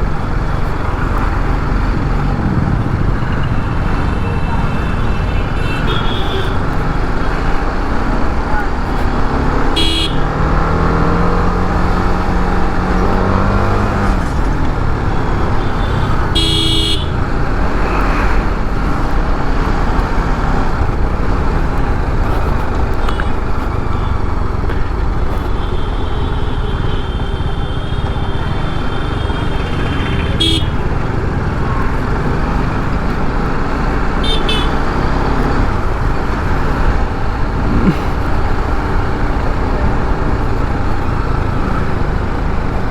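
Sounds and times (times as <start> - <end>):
vehicle horns honking: 3.4 - 6.8, 9.7 - 10.4, 15.1 - 17.2, 25.5 - 30.9, 34.2 - 35.0
motorcycle engine revving: 6.3 - 25.6, 27.5 - 42.9.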